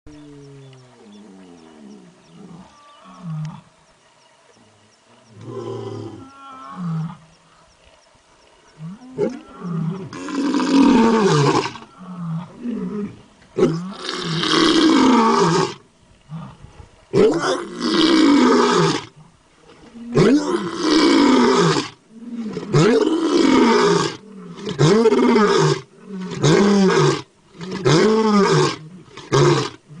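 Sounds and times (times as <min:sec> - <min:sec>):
tiger roaring: 0:08.9 - 0:19.1, 0:19.9 - 0:30.0.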